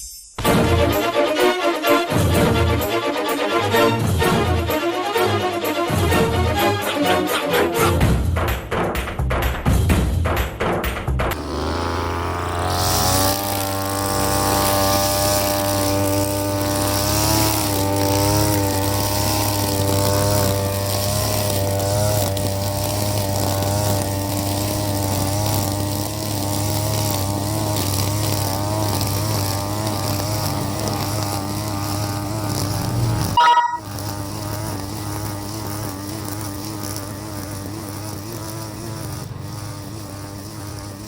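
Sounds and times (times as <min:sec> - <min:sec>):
brush cutter engine cutting grass: 0:11.3 - 0:41.0.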